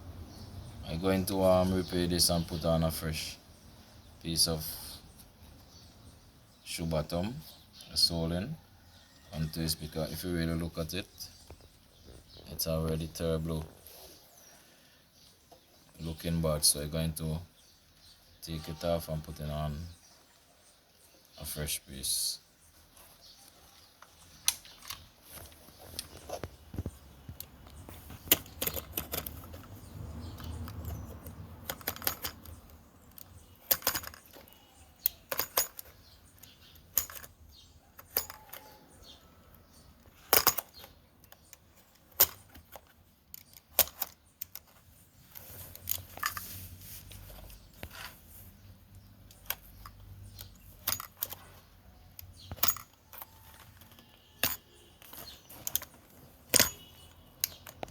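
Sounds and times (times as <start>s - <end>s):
shoe-repair tools clicking and clinking: 28.2s - 37.4s, 38.0s - 38.8s, 40.2s - 46.5s, 49.2s - 51.6s, 52.2s - 57.9s.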